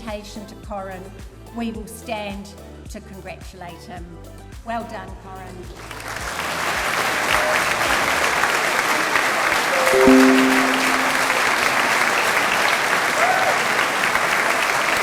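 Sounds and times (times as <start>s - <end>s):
audience applauding: 5.9s - 15.0s
held music notes: 9.8s - 11.9s.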